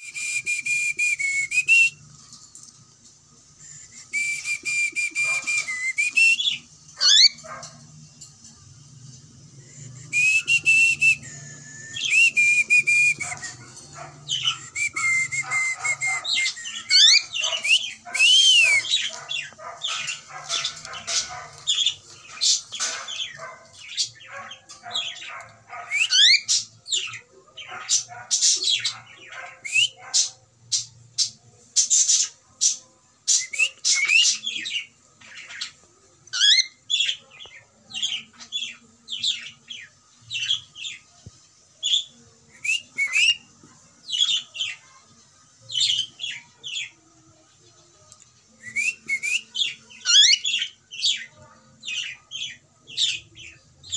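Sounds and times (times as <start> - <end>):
cockatiel whistling: 4.1 - 7.4, 10.1 - 13.6, 14.4 - 19.0, 42.6 - 43.4.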